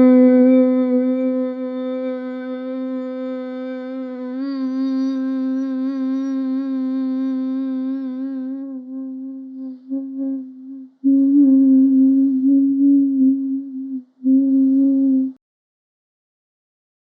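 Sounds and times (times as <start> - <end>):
woman humming: 0.0 - 15.4.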